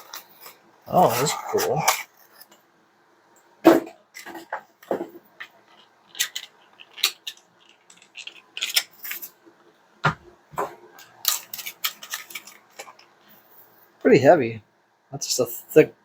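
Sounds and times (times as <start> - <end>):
plastic toy pieces clicking: 5.4 - 9.3, 11.2 - 12.9.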